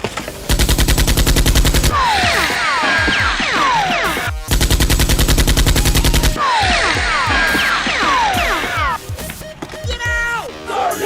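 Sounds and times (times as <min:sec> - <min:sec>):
zapping blaster shots: 0:00.5 - 0:09.0
automatic gunfire burst: 0:00.5 - 0:09.1.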